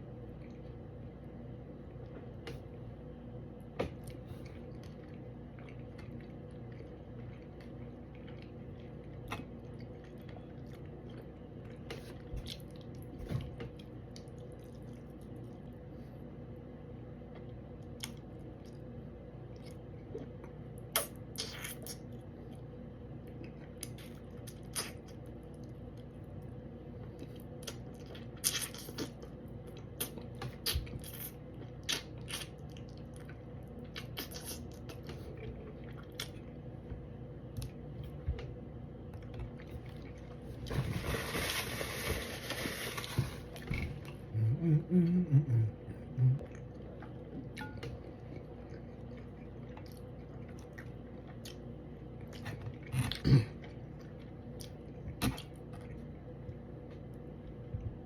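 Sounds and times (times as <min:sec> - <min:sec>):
person chewing: 0:04.0 - 0:15.7, 0:23.2 - 0:26.1, 0:27.2 - 0:36.7.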